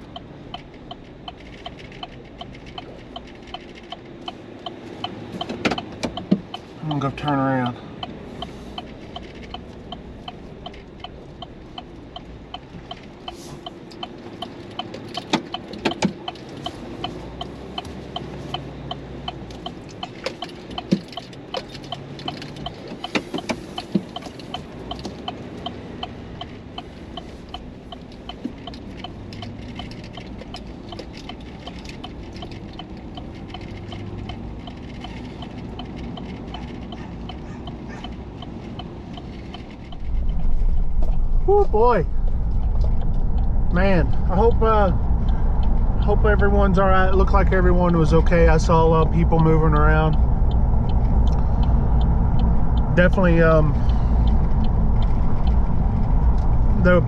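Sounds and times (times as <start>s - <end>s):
sharp knocks and clicks: 0.0s - 41.4s
engine and road rumble: 0.0s - 57.0s
turn signal ticking: 0.0s - 57.0s.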